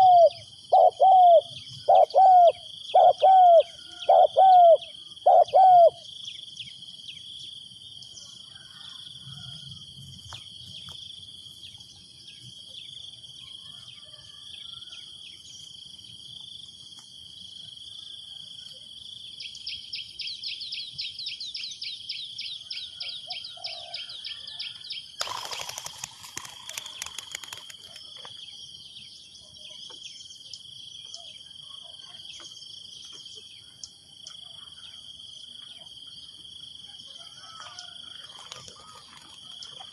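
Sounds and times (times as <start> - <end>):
dove cooing: 0.0 - 6.0
high-pitched insect drone: 25.2 - 28.2.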